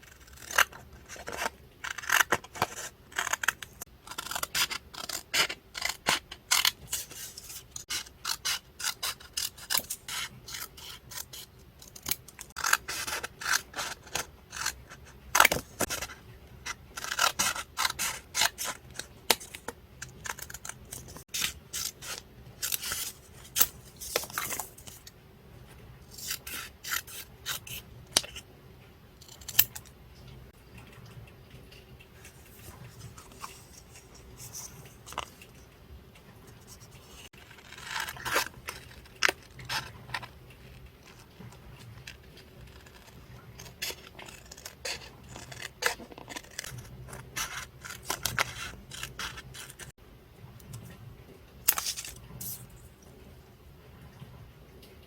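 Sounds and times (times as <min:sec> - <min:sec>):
scissors snipping paper: 0:00.0 - 0:25.1, 0:26.1 - 0:28.4, 0:36.7 - 0:49.9, 0:51.7 - 0:52.7
paper rubbing and scraping: 0:15.4 - 0:25.1, 0:32.2 - 0:35.4.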